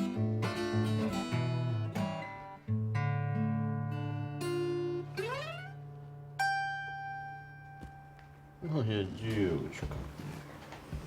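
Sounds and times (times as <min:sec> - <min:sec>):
acoustic guitar playing: 0:00.0 - 0:09.8.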